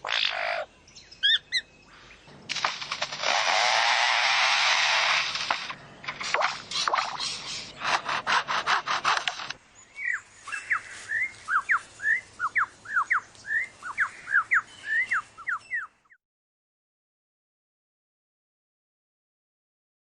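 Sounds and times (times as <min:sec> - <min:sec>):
bird mimicking chainsaw rasping: 0:02.6 - 0:09.6.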